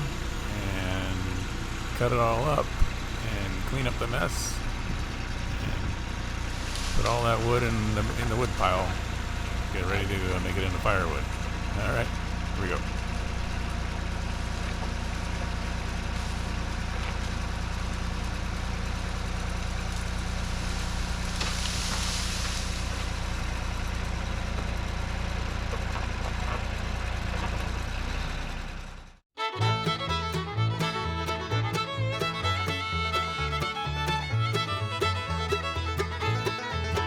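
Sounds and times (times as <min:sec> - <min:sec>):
tractor engine running: 0:00.0 - 0:37.0
brief hissing rustle: 0:21.5 - 0:22.8.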